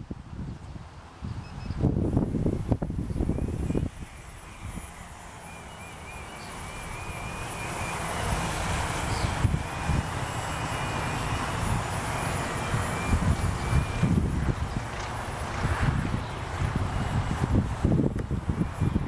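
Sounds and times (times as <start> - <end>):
wind rumbling on microphone: 0.0 - 19.0
drone propellers whining: 0.6 - 19.0.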